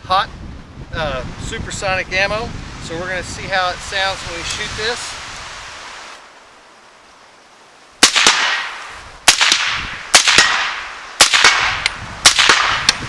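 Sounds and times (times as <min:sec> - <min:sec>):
suppressed gunshots with echo: 0:08.0 - 0:13.0.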